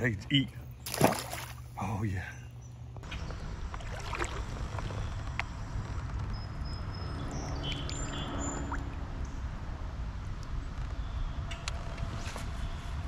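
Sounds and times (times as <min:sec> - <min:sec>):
water moving around a kayak: 0:03.6 - 0:05.4.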